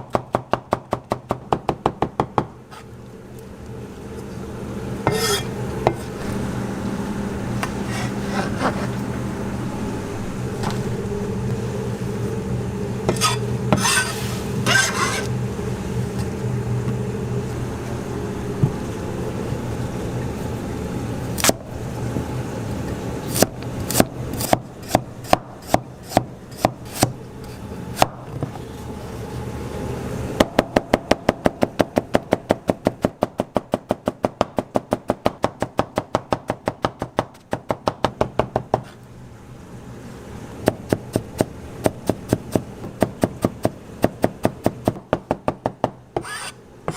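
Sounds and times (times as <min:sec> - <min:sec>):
low hum: 0:02.4 - 0:33.1.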